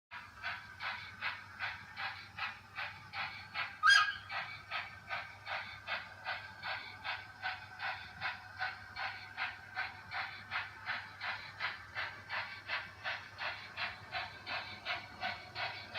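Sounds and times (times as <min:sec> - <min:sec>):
model steam locomotive chuffing: 0:00.1 - 0:15.9
loud whistle blast: 0:03.8 - 0:04.2.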